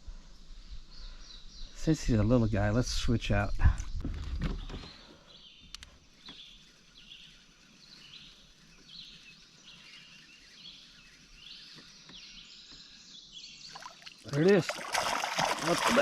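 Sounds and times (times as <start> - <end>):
light clicks: 5.6 - 6.4.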